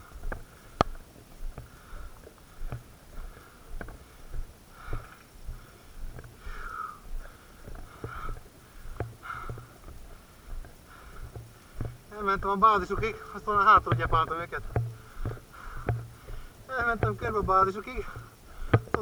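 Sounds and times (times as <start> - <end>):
soft low thumps: 0.0 - 19.0
person breathing close: 1.6 - 9.7, 10.9 - 11.9, 14.9 - 16.7, 18.0 - 19.0.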